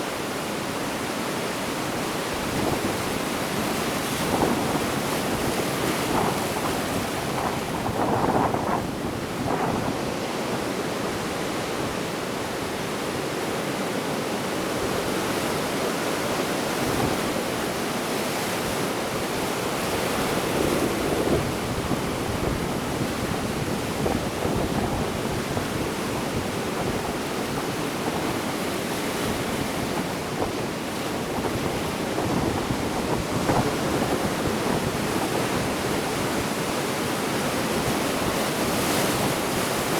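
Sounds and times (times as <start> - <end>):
wind buffeting microphone: 2.4 - 10.6, 19.3 - 39.9.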